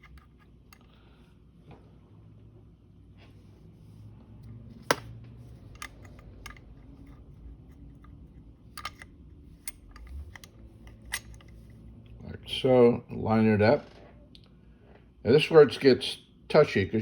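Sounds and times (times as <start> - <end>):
small metal parts clicking: 5.6 - 11.7.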